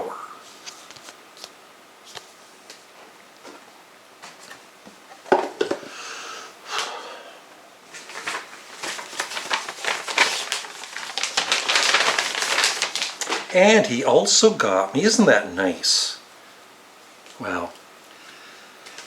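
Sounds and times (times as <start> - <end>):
packaging rustling and crinkling: 7.9 - 14.0.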